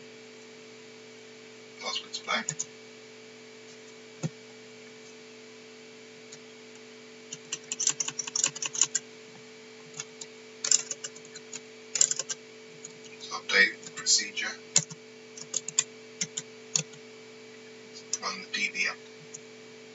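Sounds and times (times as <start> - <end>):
faint electrical hum: 0.0 - 19.9
computer keyboard typing: 2.4 - 2.7, 7.3 - 9.0, 9.9 - 13.2, 14.8 - 17.0.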